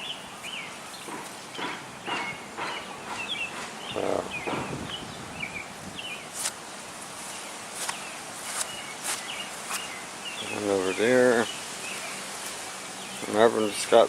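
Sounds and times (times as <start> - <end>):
small birds chirping: 0.0 - 14.0
footsteps on wet ground: 6.3 - 10.0.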